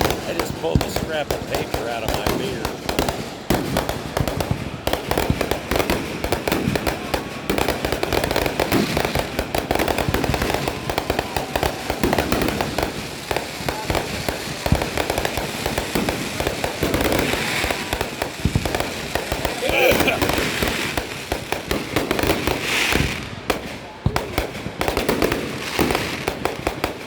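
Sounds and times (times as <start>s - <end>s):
firecrackers popping: 0.0s - 27.0s.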